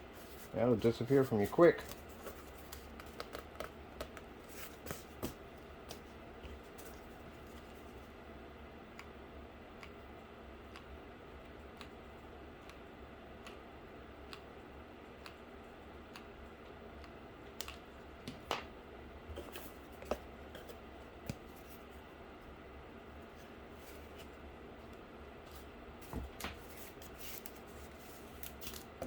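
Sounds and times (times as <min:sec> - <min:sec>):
steady low hum: 0:00.0 - 0:29.0
hands working cardboard and tools: 0:00.1 - 0:08.1, 0:19.3 - 0:21.9, 0:25.4 - 0:29.0.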